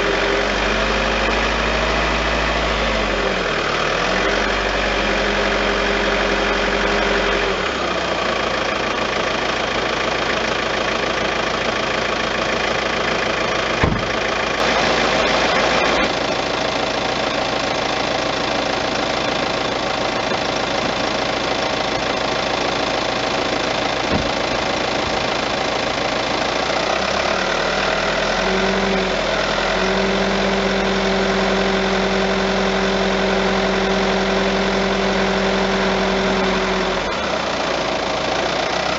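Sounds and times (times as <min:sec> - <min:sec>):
car engine running: 0:00.0 - 0:38.9.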